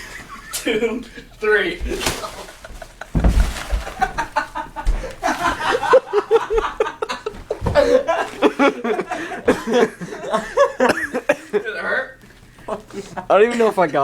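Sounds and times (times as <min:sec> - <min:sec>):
young men laughing loudly: 0:00.0 - 0:12.0
boot kick dull thump: 0:03.1 - 0:04.2.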